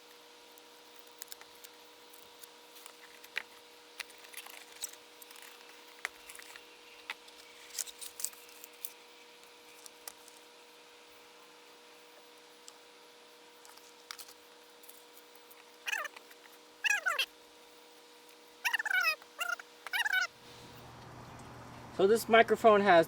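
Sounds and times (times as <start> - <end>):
faint electrical hum: 0.0 - 23.0
packaging clicks and rustles: 0.6 - 9.0.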